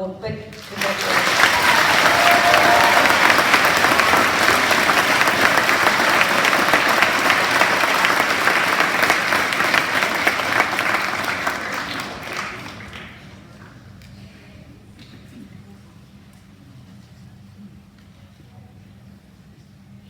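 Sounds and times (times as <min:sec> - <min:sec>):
audience applauding: 0:00.5 - 0:13.6.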